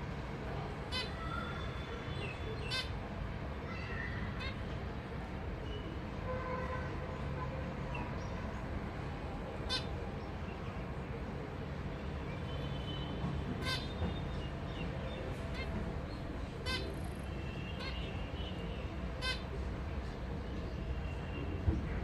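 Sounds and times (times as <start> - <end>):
finch calls: 0.9 - 3.0, 9.6 - 10.3, 13.6 - 19.6.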